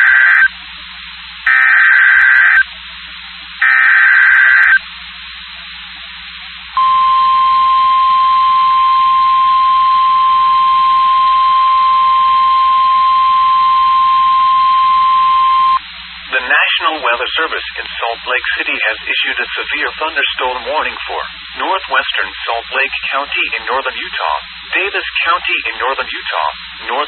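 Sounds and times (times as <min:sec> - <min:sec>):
steady high alarm tone: 0:00.0 - 0:00.5, 0:01.5 - 0:02.6, 0:03.6 - 0:04.8, 0:06.8 - 0:15.8
radio static hiss: 0:00.0 - 0:27.0
buzzy data bursts: 0:01.4 - 0:02.7, 0:03.6 - 0:04.8.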